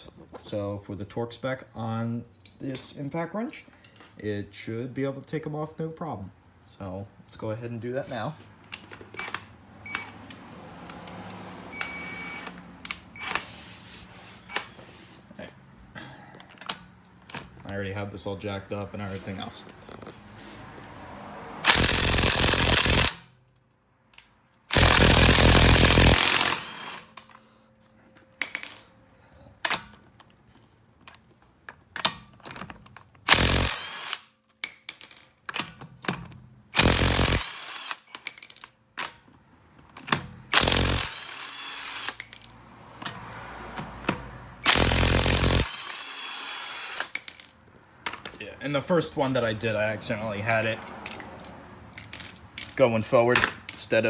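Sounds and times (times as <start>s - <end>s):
impact wrench hammering lug nuts: 21.6s - 23.3s, 24.7s - 27.3s, 33.2s - 34.9s, 35.6s - 38.1s, 40.0s - 42.4s, 44.0s - 47.3s.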